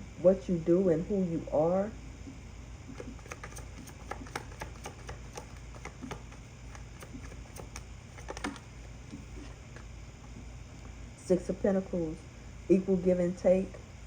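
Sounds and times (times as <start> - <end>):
cards clicking and tapping: 2.9 - 8.7.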